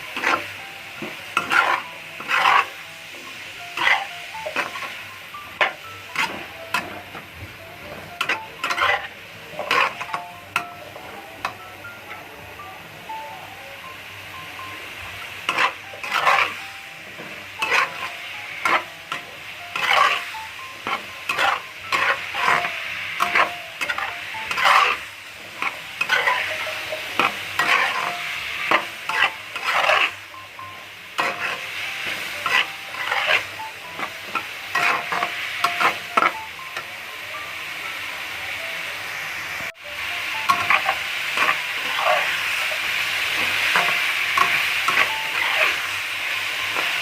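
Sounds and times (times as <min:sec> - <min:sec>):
utensil scraping pan: 0:00.0 - 0:00.5, 0:01.4 - 0:02.8, 0:03.7 - 0:04.9, 0:05.6 - 0:07.0, 0:08.2 - 0:10.2, 0:15.4 - 0:16.6, 0:17.2 - 0:30.2, 0:31.2 - 0:36.4, 0:40.5 - 0:42.3, 0:43.4 - 0:45.8
oil sizzling: 0:00.0 - 0:12.2, 0:13.3 - 0:47.0.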